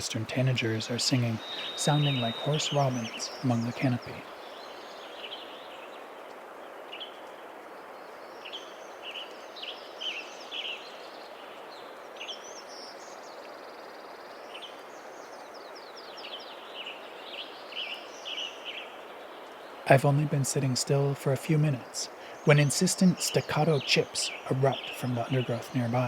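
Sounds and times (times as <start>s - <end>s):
birds singing hoarse phrases: 0.0s - 4.4s, 19.9s - 26.0s
higher bird notes: 0.0s - 4.4s, 19.9s - 26.0s
mountain stream rushing: 0.0s - 6.8s, 16.2s - 26.0s.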